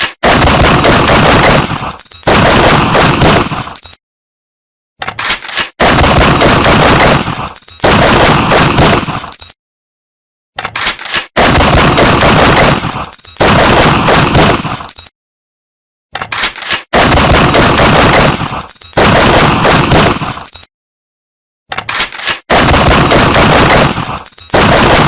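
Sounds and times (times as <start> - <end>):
rapid gunfire: 0.0 - 3.8, 5.8 - 9.3, 11.4 - 14.9, 17.0 - 20.5, 22.5 - 25.0.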